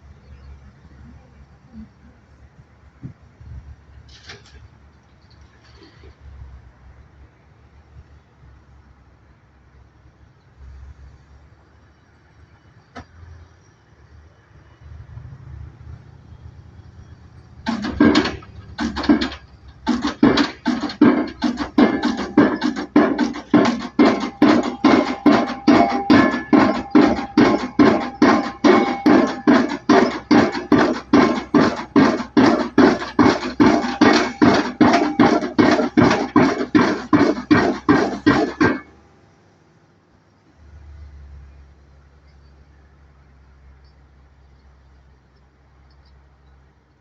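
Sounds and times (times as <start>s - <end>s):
engine rumble: 0.0s - 47.0s
pile driver hammer blows: 17.6s - 39.0s
loud music with drum beat: 19.9s - 38.8s.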